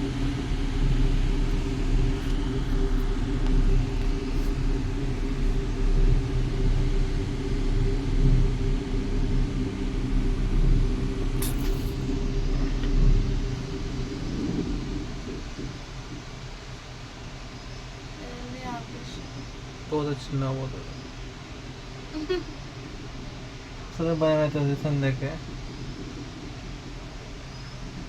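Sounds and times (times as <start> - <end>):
car engine: 0.0 - 15.8
road rumble: 0.0 - 28.0.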